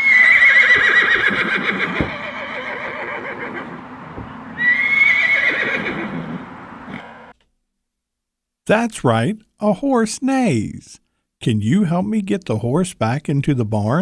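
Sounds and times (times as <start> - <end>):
horse neighing: 0.0 - 7.3.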